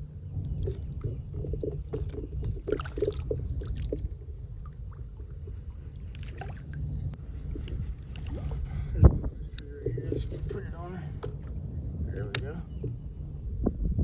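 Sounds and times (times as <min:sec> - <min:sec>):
wind rumbling on microphone: 0:00.0 - 0:14.0
knocks and splashes: 0:00.6 - 0:06.8.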